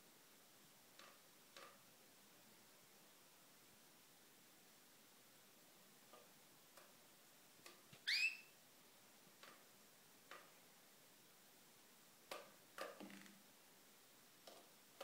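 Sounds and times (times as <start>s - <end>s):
faint soft clicks and taps: 0.9s - 1.8s, 6.1s - 7.0s, 7.6s - 8.0s, 9.4s - 10.6s, 14.4s - 15.0s
canary chirp: 8.0s - 8.6s.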